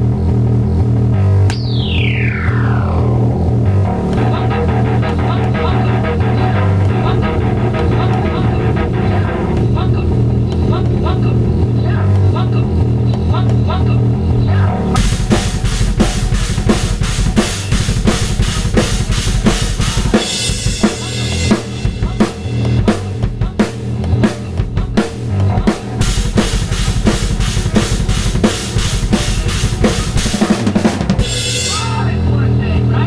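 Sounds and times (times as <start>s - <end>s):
heavy metal guitar riff: 1.5s - 9.8s, 15.0s - 22.9s, 26.0s - 32.6s
double bass drum kicks: 15.0s - 32.4s.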